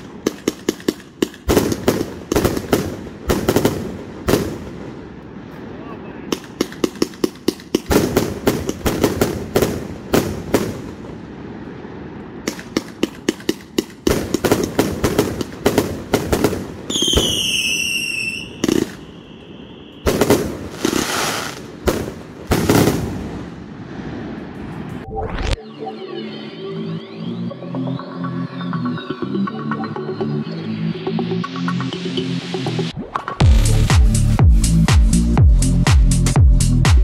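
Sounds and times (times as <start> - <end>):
firework bangs and crackle: 0.0 - 25.1
firework falling whistle: 16.9 - 21.6.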